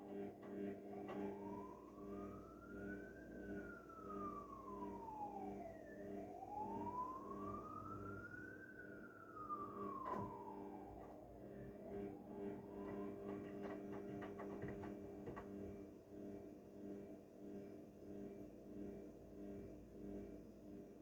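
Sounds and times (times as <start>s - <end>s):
siren wailing: 1.2s - 13.2s.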